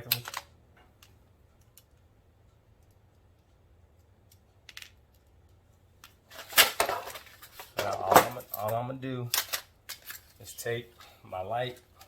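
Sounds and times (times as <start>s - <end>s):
metal brackets clattering: 6.3s - 10.4s.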